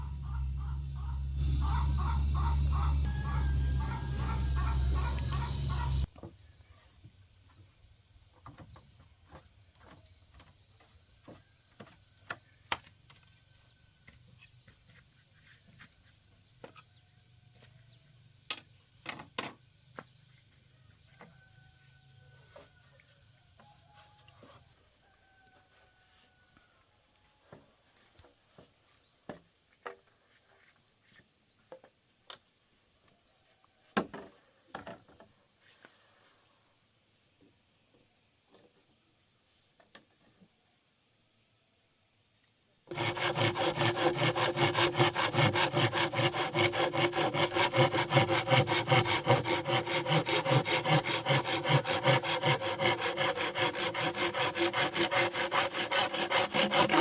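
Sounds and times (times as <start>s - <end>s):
deep pulsing rumble: 0.0s - 6.1s
insects chirring: 0.0s - 11.0s.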